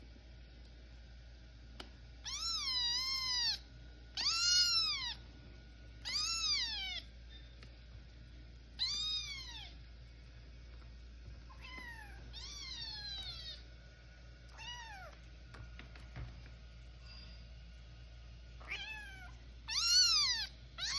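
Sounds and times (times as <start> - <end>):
kitten meowing: 2.2 - 3.6, 4.2 - 5.2, 6.0 - 7.1, 8.8 - 9.8, 11.5 - 13.6, 14.5 - 15.2, 18.6 - 20.9.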